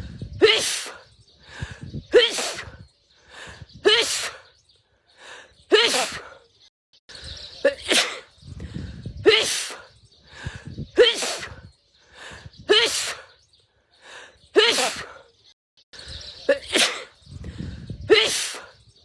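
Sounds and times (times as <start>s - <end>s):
woman sneezing: 5.7s - 6.2s, 14.6s - 15.1s.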